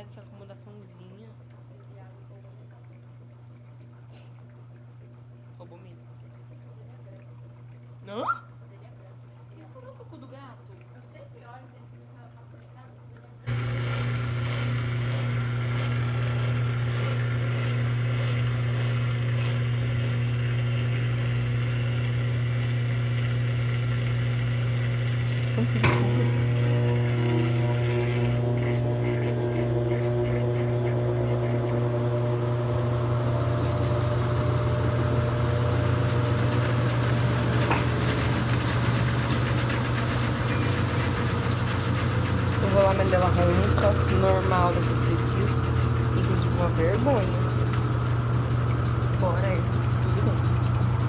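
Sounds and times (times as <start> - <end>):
washing machine humming: 13.5 - 51.0.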